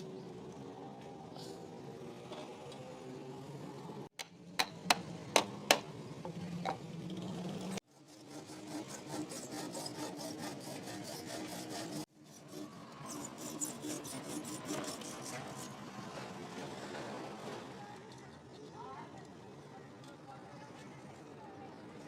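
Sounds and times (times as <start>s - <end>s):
rasping filing strokes: 7.9s - 16.0s.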